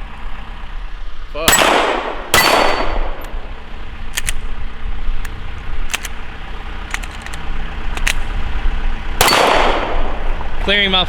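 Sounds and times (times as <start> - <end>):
engine idling: 0.0 - 11.0
short sharp clicks: 4.2 - 4.5.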